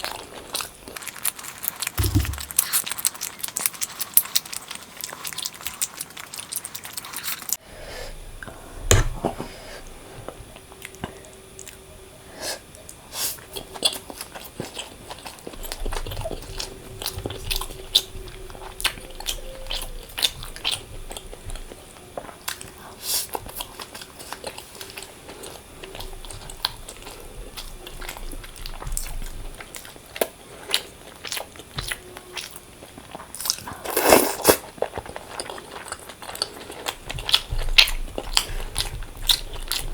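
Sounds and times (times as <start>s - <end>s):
person biting and chewing: 1.2s - 3.6s.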